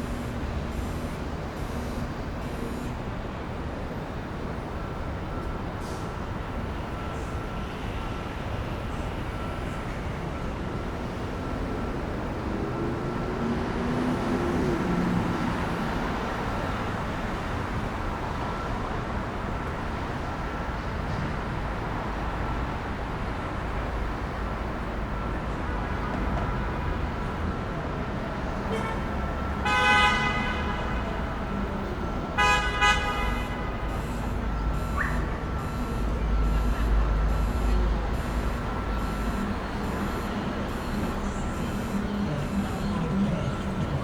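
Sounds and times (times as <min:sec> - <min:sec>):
car horn honking: 0:00.0 - 0:03.0, 0:28.7 - 0:31.3, 0:32.3 - 0:44.0
rumble of passing vehicles: 0:00.0 - 0:44.0.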